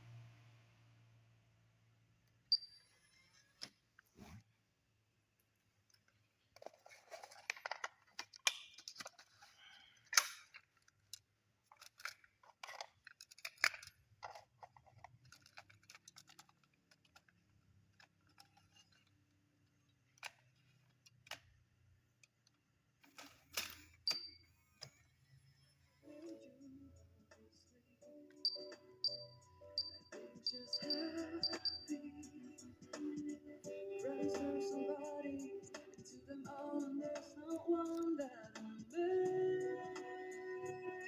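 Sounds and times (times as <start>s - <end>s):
hands handling stereo parts: 5.9s - 19.4s.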